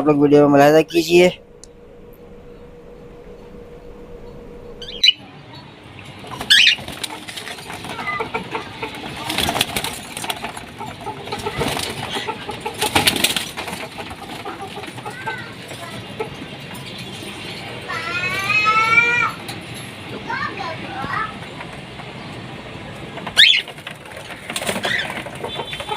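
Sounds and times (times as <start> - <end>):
wings fluttering: 0.8 - 19.4, 20.6 - 25.9
cockatiels chirping: 4.8 - 5.2, 6.3 - 7.0, 23.4 - 23.7, 24.6 - 25.9.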